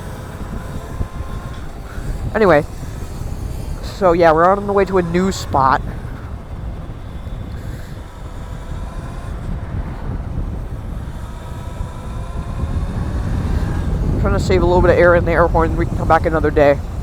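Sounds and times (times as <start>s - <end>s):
faint electric motor whine: 0.0s - 17.0s
wind rumbling on microphone: 0.0s - 17.0s.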